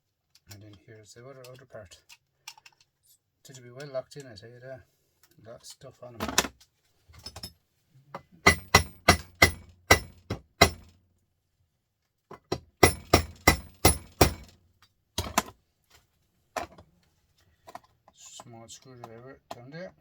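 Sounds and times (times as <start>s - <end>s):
hammer striking metal: 8.4s - 10.9s, 12.8s - 14.5s.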